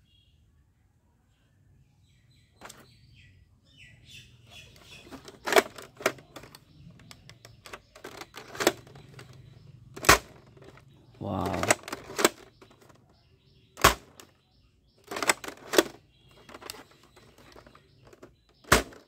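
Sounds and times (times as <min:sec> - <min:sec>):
plastic toy rifle clicks and knocks: 0:05.0 - 0:09.4, 0:10.0 - 0:13.0, 0:13.8 - 0:14.3, 0:15.0 - 0:19.0.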